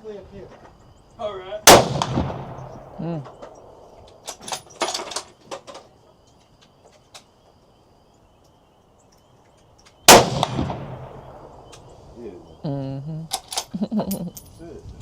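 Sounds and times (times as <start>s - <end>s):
loud gunshot: 1.6s - 3.0s, 10.1s - 11.5s.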